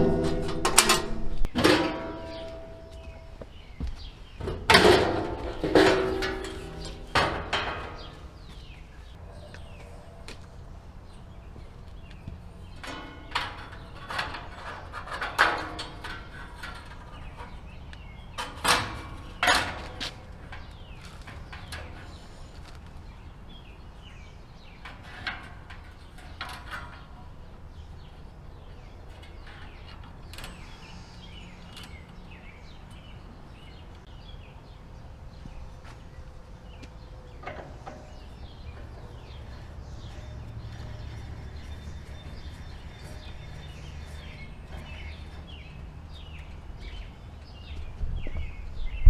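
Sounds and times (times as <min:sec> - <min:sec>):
sharp knocks and clanks: 0:00.0 - 0:09.8, 0:36.9 - 0:48.4.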